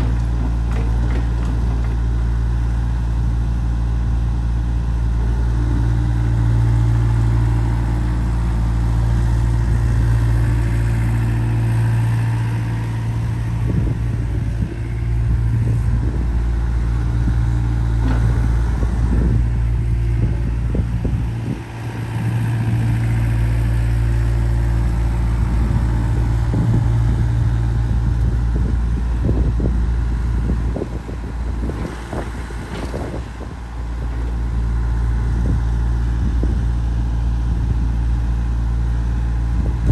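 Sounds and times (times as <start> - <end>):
machine clatter and knocks: 0.0 - 2.2, 31.7 - 34.5
excavator diesel engine running: 0.0 - 39.9.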